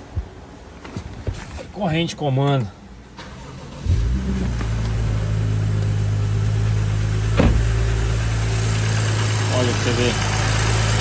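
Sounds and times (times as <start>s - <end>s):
car engine starting and idling: 3.0s - 11.0s.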